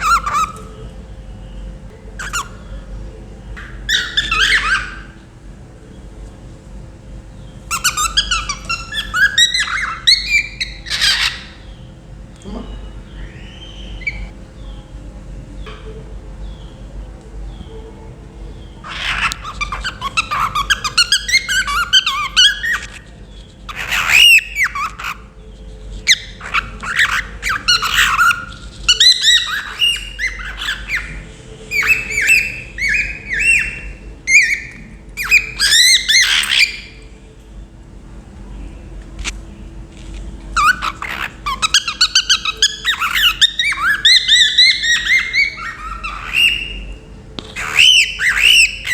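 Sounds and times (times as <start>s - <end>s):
cockatiel chirping and whistling: 0.0s - 0.7s, 3.9s - 5.2s, 7.7s - 11.6s, 18.9s - 25.3s, 26.0s - 37.0s, 40.6s - 46.9s, 47.5s - 48.9s.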